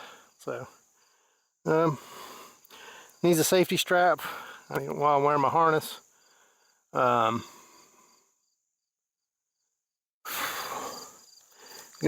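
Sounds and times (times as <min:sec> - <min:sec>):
heavy breathing close to microphone: 0:00.0 - 0:03.2, 0:10.3 - 0:12.0
faint crickets chirping: 0:00.0 - 0:12.0.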